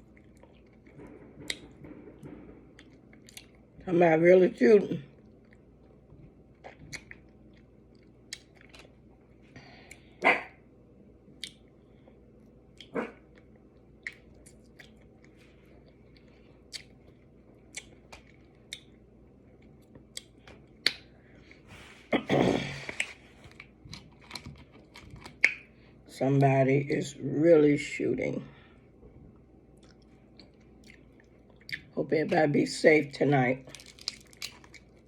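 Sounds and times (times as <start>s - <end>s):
chewing: 0.0s - 3.7s, 5.1s - 9.1s, 12.7s - 21.6s, 22.8s - 25.7s, 29.7s - 31.9s, 33.6s - 35.0s
crab shell cracking: 33.7s - 35.0s.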